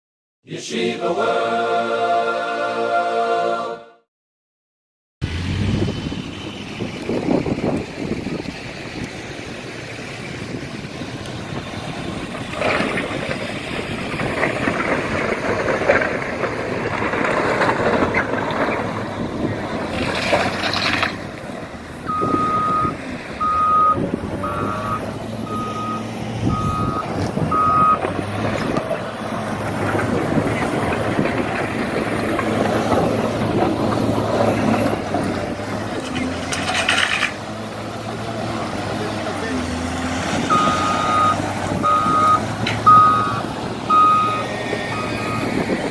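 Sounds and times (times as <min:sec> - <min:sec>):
outdoor noise: 0:05.2 - 0:45.9
vehicle engines running: 0:05.2 - 0:45.9
vehicle reversing alarm beeps: 0:22.0 - 0:28.1, 0:40.5 - 0:45.7.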